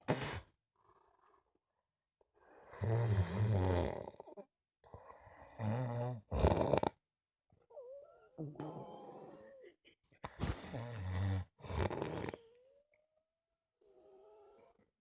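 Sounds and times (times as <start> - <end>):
person snoring loudly: 2.6 - 4.3, 5.0 - 7.0, 10.5 - 12.5.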